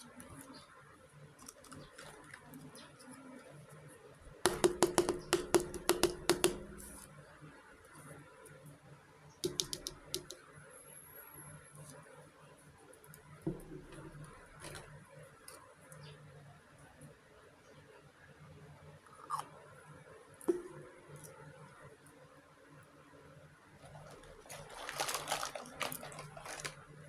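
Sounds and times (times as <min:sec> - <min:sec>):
small hard pieces clicking: 0:23.9 - 0:26.8.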